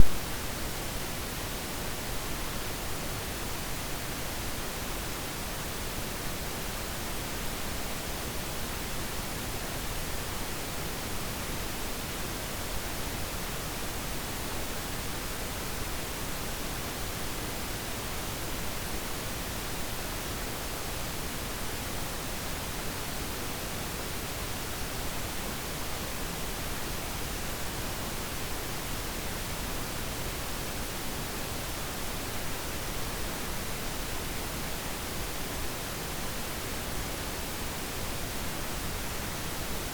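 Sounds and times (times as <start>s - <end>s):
steady synthetic hiss: 0.0s - 0.5s.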